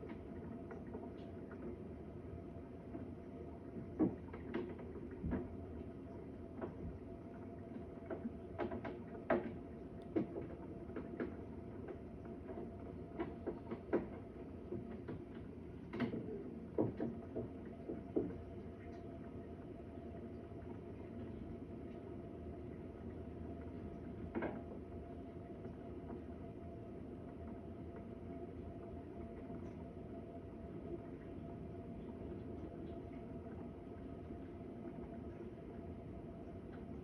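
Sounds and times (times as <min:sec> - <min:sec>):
background hum: 0:00.0 - 0:37.0
irregular knocks and clicks: 0:08.0 - 0:18.4.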